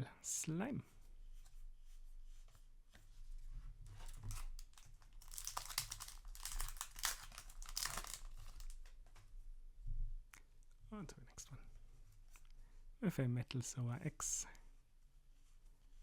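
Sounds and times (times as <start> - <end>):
foil wrapper crinkling and tearing: 4.0 - 9.0.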